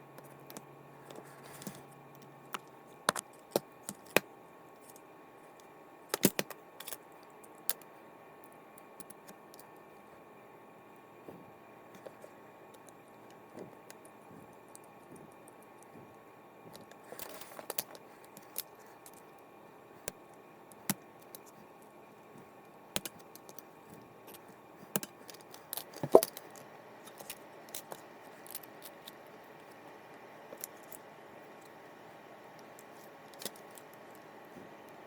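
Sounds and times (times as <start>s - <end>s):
small metal parts clicking and knocking: 6.1s - 7.9s, 16.7s - 19.2s, 24.2s - 29.2s, 32.8s - 34.1s.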